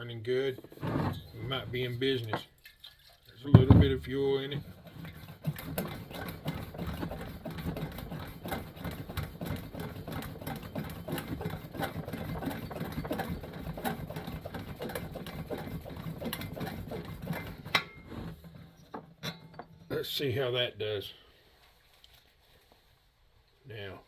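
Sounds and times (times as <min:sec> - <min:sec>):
hand pump plunger strokes: 0:00.3 - 0:18.9.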